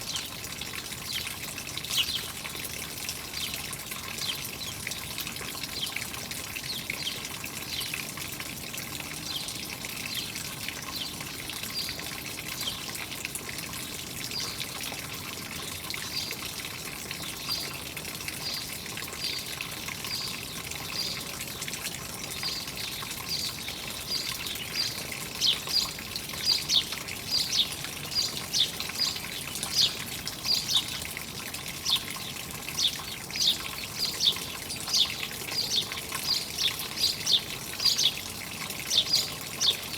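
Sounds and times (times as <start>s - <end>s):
water trickling: 0.0s - 39.9s
small birds chirping: 1.0s - 2.4s, 18.4s - 31.1s, 31.7s - 39.9s.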